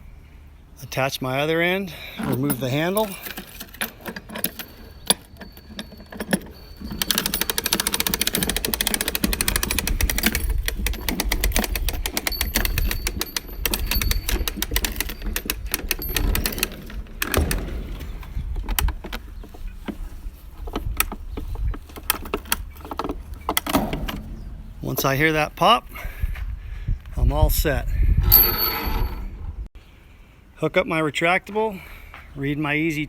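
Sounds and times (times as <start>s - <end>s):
ratchet tensioner clicking: 3.3s - 18.0s
clicks and knocks: 3.3s - 25.2s.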